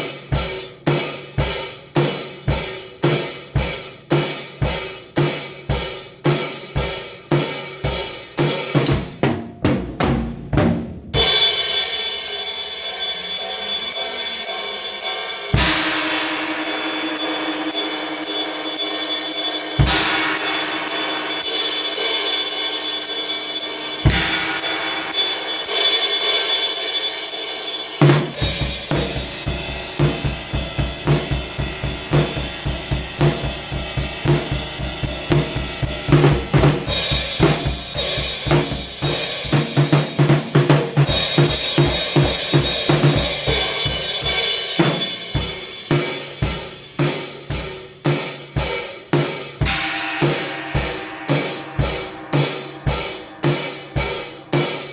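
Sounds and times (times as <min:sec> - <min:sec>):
hi-hat pattern: 0:00.0 - 0:09.3, 0:15.5 - 0:27.4, 0:28.0 - 0:54.9
bass drum and snare groove: 0:00.0 - 0:11.9, 0:19.8 - 0:20.4, 0:24.0 - 0:24.8, 0:28.0 - 0:54.9
held notes: 0:49.6 - 0:54.9.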